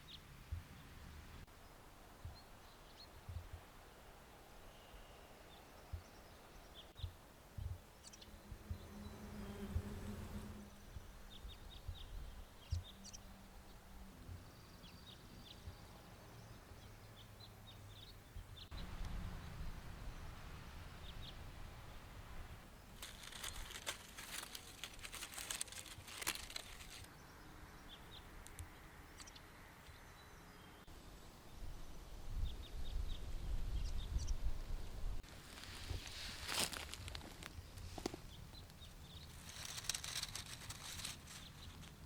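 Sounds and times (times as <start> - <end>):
small birds chirping: 4.6 - 22.1, 22.7 - 30.9, 32.4 - 42.0
dense crackling rustle: 22.8 - 27.1, 35.2 - 42.0.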